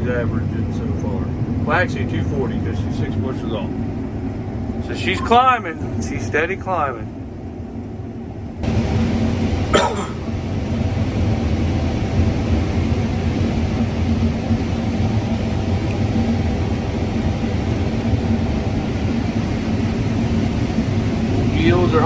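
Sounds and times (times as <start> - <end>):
combine harvester droning: 0.0 - 7.0, 7.8 - 22.0
short cough-like sound: 9.7 - 10.2.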